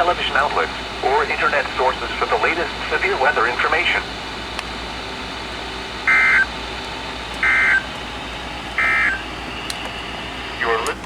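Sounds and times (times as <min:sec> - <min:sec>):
digital data tone bursts: 0:06.0 - 0:06.6, 0:07.4 - 0:07.9, 0:08.8 - 0:09.3.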